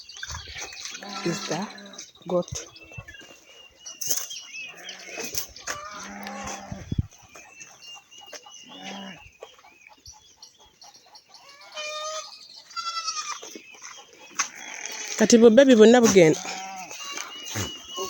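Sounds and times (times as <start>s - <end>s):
chickens clucking and chirping: 0.0s - 18.0s
animal bleating: 0.9s - 2.0s, 4.7s - 6.9s, 11.6s - 13.5s, 14.4s - 15.2s, 16.3s - 18.0s.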